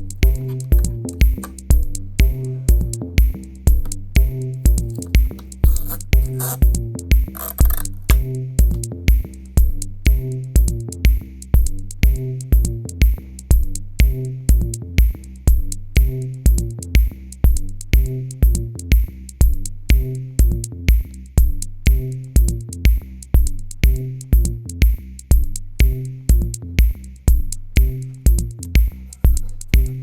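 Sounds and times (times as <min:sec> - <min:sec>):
electronic music with drum machine: 0:00.0 - 0:30.0.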